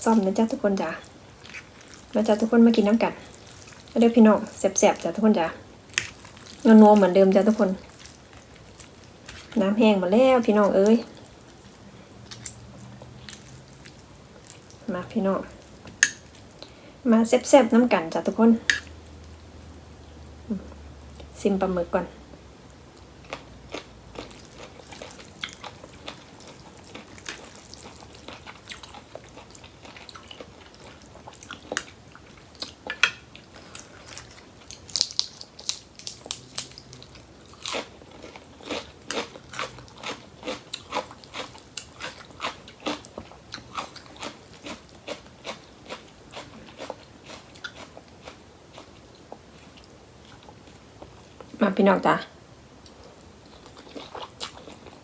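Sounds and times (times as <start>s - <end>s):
chewing and crunching food: 0.0s - 16.8s, 22.9s - 51.6s, 52.8s - 55.0s.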